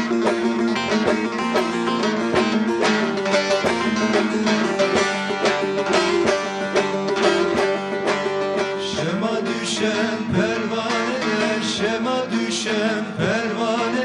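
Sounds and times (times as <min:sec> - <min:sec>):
plucked lute folk accompaniment: 0:00.0 - 0:14.0
man singing: 0:08.8 - 0:14.0.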